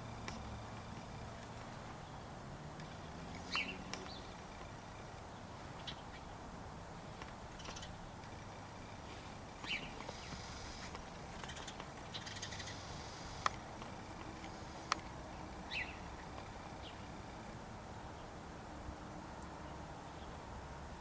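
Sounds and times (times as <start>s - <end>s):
birds calling: 0.0s - 17.5s
sharp clicks: 9.6s - 15.1s.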